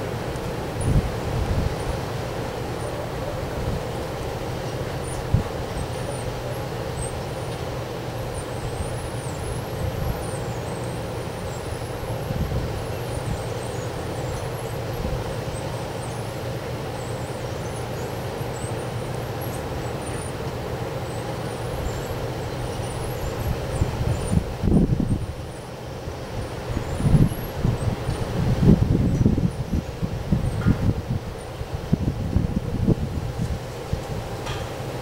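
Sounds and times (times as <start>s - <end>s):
wind blowing: 0.0s - 16.0s, 21.7s - 35.0s.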